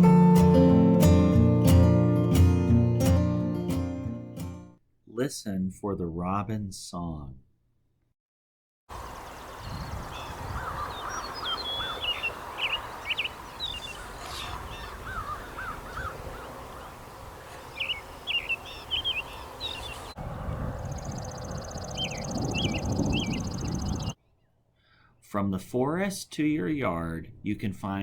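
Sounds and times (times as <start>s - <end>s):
robin singing: 8.9s - 24.4s.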